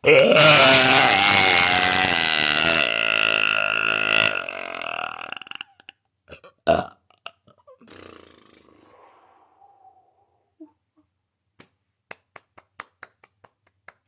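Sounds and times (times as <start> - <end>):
woman belching: 0.0 - 8.7.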